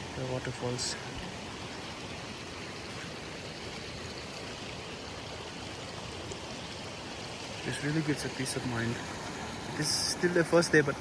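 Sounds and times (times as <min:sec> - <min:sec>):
waterfall rushing: 0:07.1 - 0:11.0.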